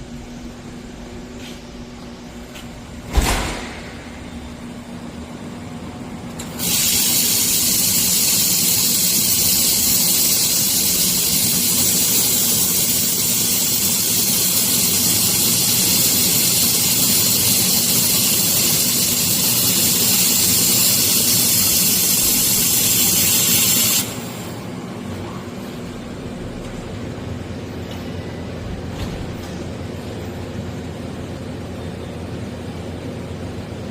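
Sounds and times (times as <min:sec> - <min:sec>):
machine hum: 0:00.0 - 0:33.9
loud high hiss of welding: 0:06.4 - 0:24.8.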